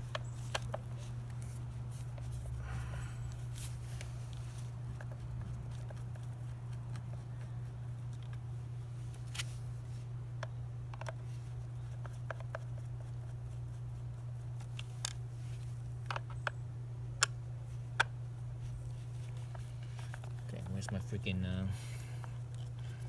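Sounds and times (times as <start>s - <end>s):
steady low hum: 0.0s - 23.0s
plastic parts and tools clicking: 16.1s - 16.6s.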